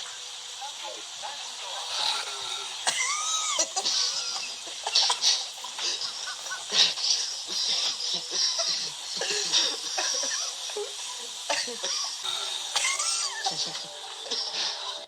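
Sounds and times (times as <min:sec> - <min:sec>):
people laughing: 0:03.1 - 0:15.0.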